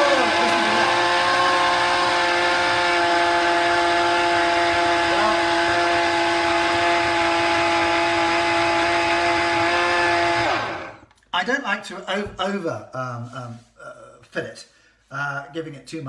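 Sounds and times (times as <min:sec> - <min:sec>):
electric blender whining: 0:00.0 - 0:11.1.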